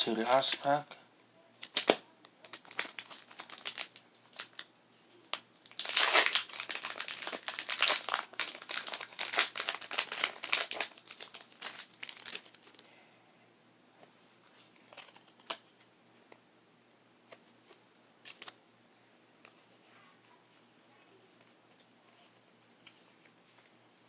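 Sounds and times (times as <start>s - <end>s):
foil wrapper crinkling: 1.6s - 4.7s, 5.3s - 12.9s.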